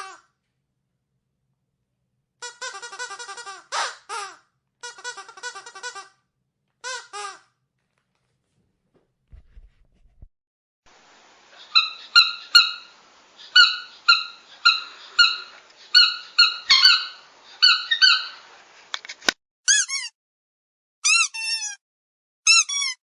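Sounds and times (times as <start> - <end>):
squeaky dog toy squeaking: 0.0 - 0.2, 2.4 - 6.2, 6.8 - 7.5, 19.7 - 20.2, 21.0 - 21.8, 22.4 - 23.0.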